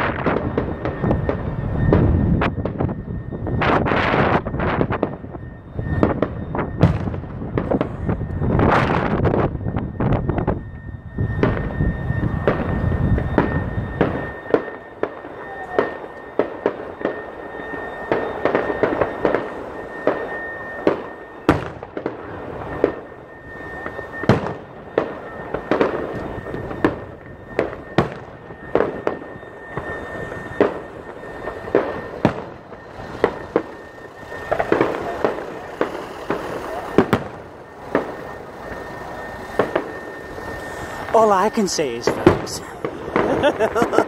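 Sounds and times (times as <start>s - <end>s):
fireworks bangs and pops: 0.0s - 2.8s, 34.4s - 38.2s
fireworks crackling: 0.0s - 2.9s, 12.3s - 44.0s.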